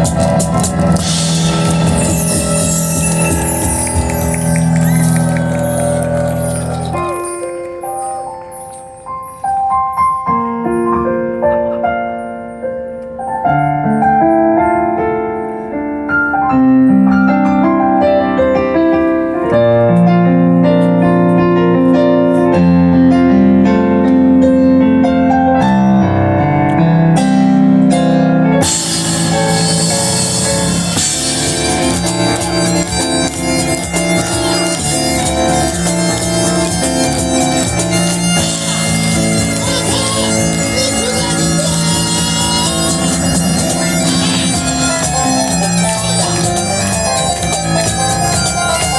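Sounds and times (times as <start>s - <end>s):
percussion: 0.0s - 11.4s, 28.6s - 48.9s
piano melody: 0.0s - 48.9s
bagpipes: 30.3s - 48.9s.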